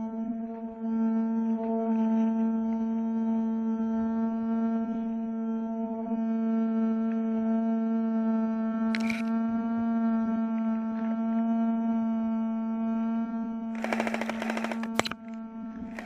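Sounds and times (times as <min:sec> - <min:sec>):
small fan motor humming: 0:13.6 - 0:16.0
rapid airsoft gunfire: 0:13.8 - 0:16.0.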